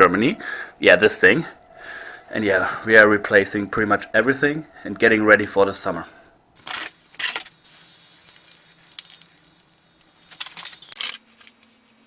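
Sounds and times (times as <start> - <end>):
metal parts clinking: 6.6 - 7.6, 8.3 - 9.4, 10.0 - 11.7.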